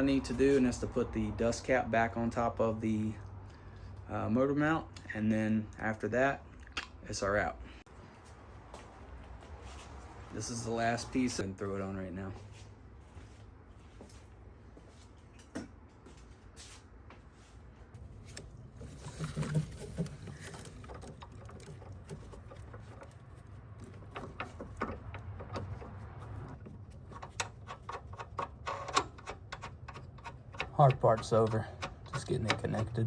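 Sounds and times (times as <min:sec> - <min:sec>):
clicks of parts being fitted: 0:23.8 - 0:33.0.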